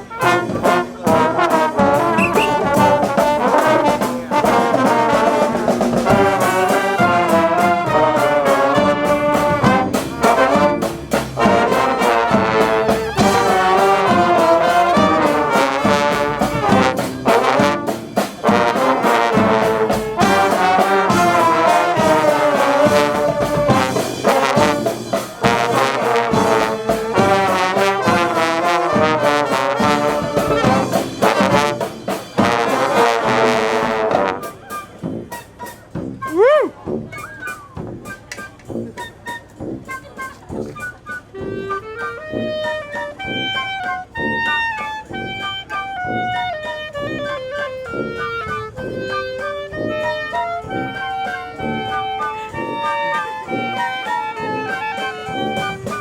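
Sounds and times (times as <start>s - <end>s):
brass marching band playing: 0.0s - 56.0s.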